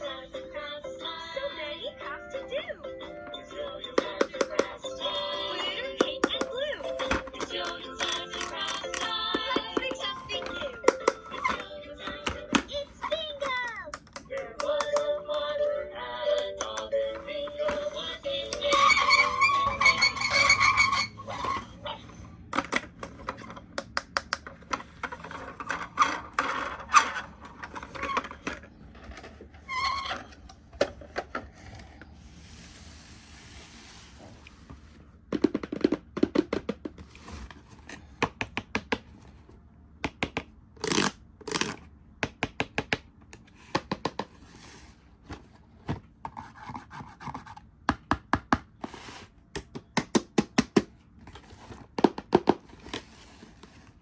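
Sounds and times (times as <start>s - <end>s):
plastic toys clicking and knocking: 4.0s - 15.5s, 22.5s - 31.7s, 35.3s - 37.5s.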